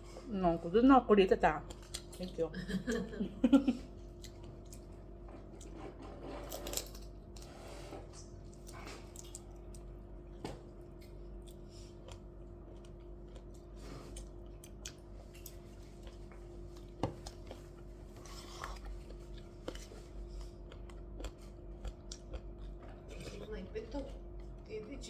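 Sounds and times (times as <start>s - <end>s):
steady hum: 0.0s - 25.0s
chewing: 4.2s - 7.5s, 8.1s - 9.9s, 10.9s - 24.7s.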